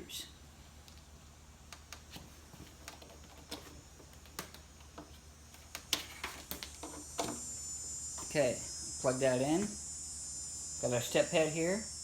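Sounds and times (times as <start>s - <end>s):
faint low hum: 0.0s - 12.0s.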